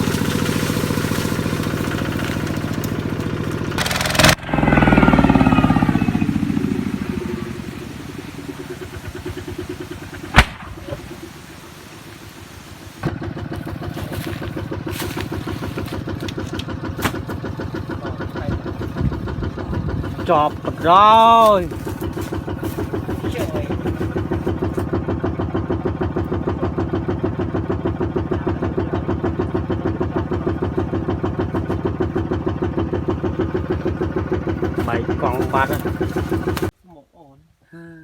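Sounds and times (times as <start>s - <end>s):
diesel engine running: 0.0s - 36.7s
sharp bang: 10.3s - 11.1s.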